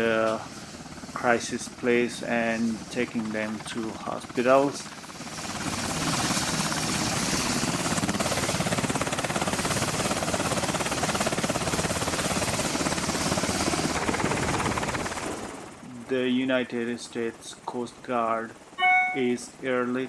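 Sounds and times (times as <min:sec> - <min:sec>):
helicopter engine noise: 0:00.0 - 0:20.0
helicopter rotor blades chopping: 0:00.0 - 0:20.0.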